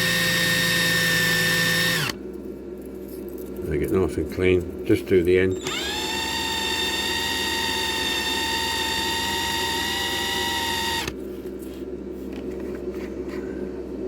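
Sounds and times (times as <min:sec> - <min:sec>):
small electric drill whining: 0:00.0 - 0:02.2, 0:05.6 - 0:11.2.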